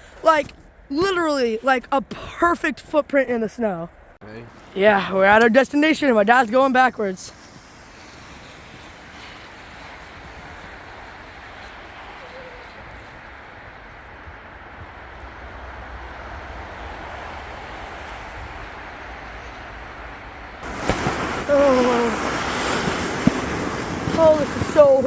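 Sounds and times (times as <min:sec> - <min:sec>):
sled sliding on snow: 0:04.4 - 0:15.5, 0:20.6 - 0:25.0.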